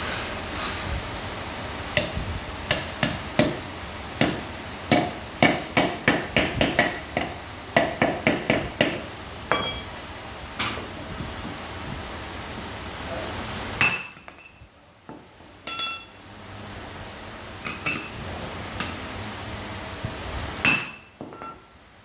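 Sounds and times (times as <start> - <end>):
hammer knocking on metal: 2.0 - 3.6, 4.2 - 9.8
short metallic ring: 9.5 - 10.0, 15.7 - 16.2.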